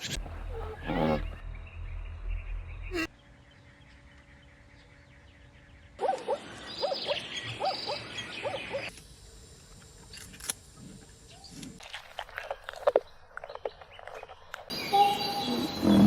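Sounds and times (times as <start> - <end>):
repeated animal calls: 0.0 - 1.4.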